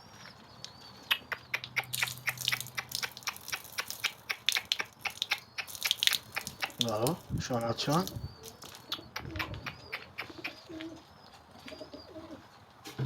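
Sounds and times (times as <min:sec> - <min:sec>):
pigeon beak clicks and sips: 0:00.7 - 0:07.4, 0:08.0 - 0:10.6.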